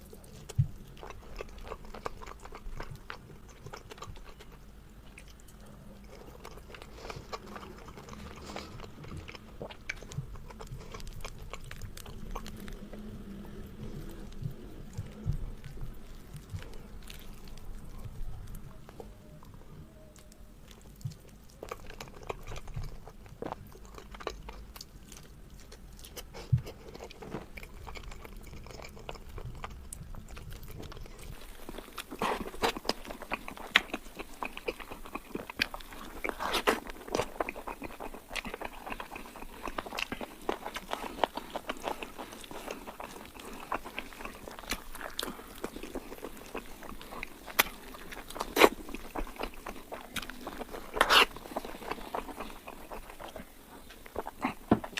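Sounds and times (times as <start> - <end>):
wet chewing and biting: 0.0 - 19.1, 20.2 - 54.9.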